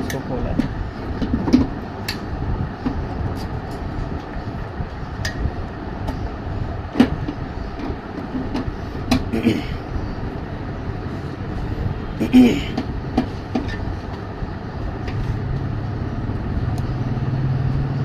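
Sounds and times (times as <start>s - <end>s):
low background rumble: 0.0s - 18.0s
parts clicking and knocking: 12.7s - 14.2s.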